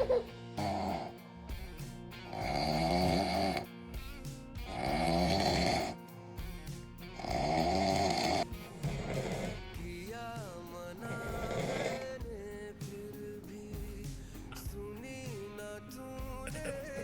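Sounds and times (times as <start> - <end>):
man snoring: 0.0 - 1.5, 2.2 - 3.7, 4.6 - 6.1, 7.1 - 10.1, 10.8 - 12.4, 16.3 - 17.0.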